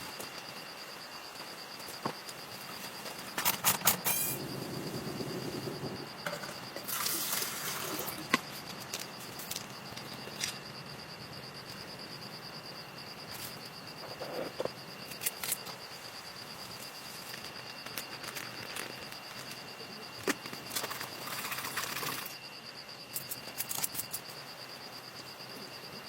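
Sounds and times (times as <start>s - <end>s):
high-pitched trill: 3.8s - 6.2s
rain hiss: 6.9s - 8.1s.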